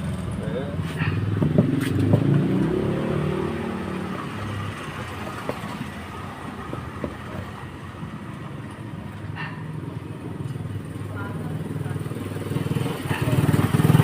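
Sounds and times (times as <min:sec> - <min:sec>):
motorcycle engine running: 0:09.7 - 0:14.0.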